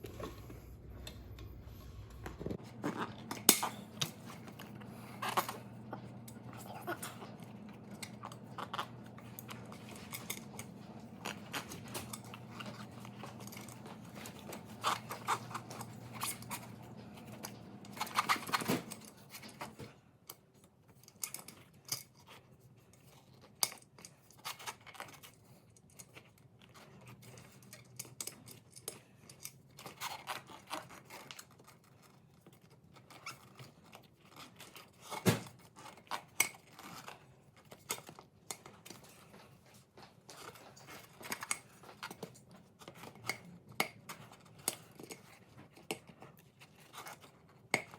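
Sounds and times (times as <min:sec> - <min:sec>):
steady low hum: 0:00.0 - 0:19.1.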